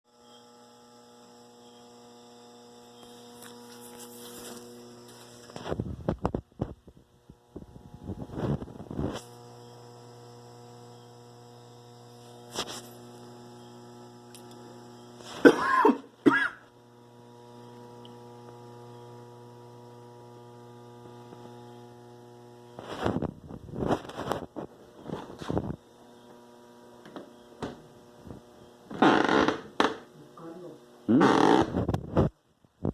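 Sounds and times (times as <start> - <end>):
refrigerator humming: 0.1 - 32.2
squeaky creak: 28.9 - 30.0, 31.1 - 31.8.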